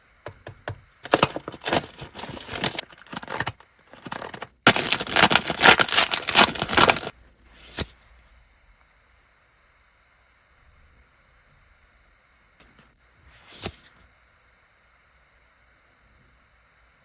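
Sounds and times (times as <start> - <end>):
packaging wrapper crinkling and tearing: 1.0 - 7.1.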